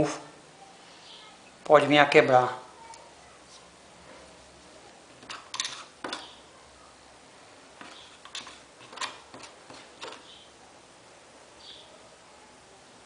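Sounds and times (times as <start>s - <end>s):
hand tools clicking and scraping: 5.2s - 6.4s, 7.8s - 10.4s.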